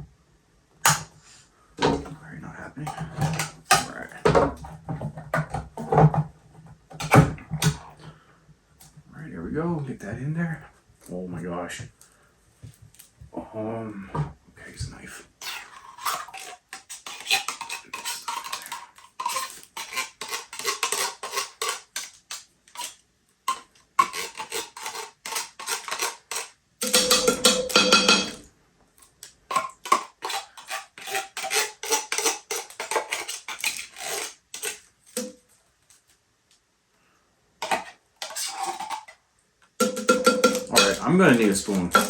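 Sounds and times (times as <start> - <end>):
knife scraping inside tin can: 2.9 - 4.0, 15.4 - 28.4, 29.5 - 35.4, 37.6 - 39.2, 39.8 - 42.0.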